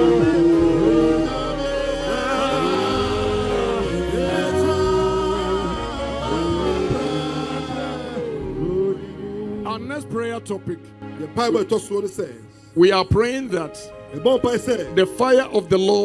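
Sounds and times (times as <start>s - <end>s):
gospel choir singing: 0.0s - 12.2s
bass and keyboard accompaniment: 0.0s - 16.0s.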